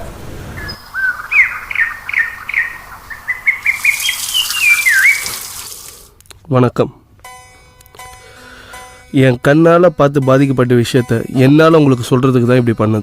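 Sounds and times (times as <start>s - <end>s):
songbird whistling: 0.6s - 5.6s.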